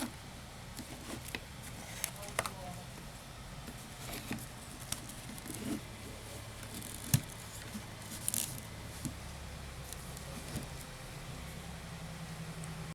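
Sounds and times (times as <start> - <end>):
steady low hum: 0.0 - 12.9.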